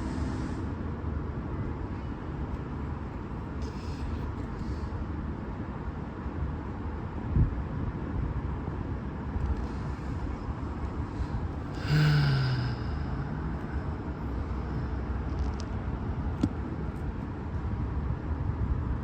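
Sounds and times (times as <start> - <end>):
man grunting: 11.8 - 13.7.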